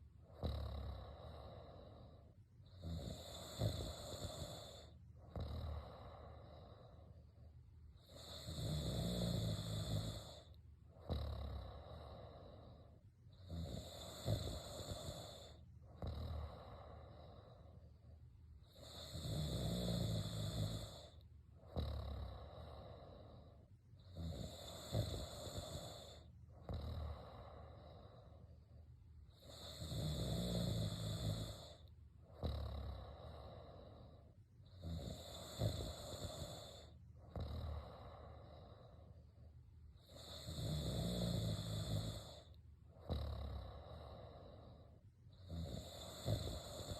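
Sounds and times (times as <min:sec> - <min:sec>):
quiet breaths: 0:00.0 - 0:46.9
person snoring: 0:00.3 - 0:07.2, 0:08.0 - 0:17.8, 0:18.6 - 0:28.6, 0:29.3 - 0:39.2, 0:40.0 - 0:46.9.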